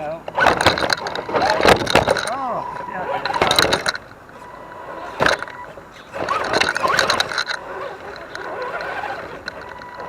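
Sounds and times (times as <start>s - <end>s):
electric motor whining: 0.3s - 10.0s
tyres scraping on rock: 4.9s - 10.0s.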